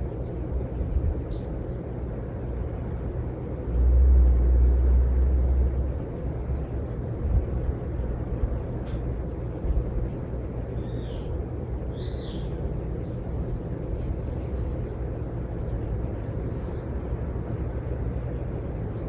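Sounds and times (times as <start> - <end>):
ceiling fan motor humming: 0.0 - 19.0
low rumble: 3.6 - 8.9.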